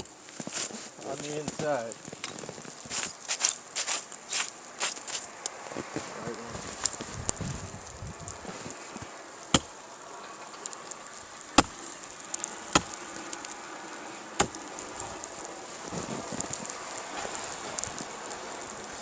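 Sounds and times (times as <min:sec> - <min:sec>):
steady hiss: 0:00.0 - 0:19.0
axe chopping wood: 0:09.5 - 0:09.7, 0:11.6 - 0:11.8, 0:12.7 - 0:13.0, 0:14.4 - 0:14.6.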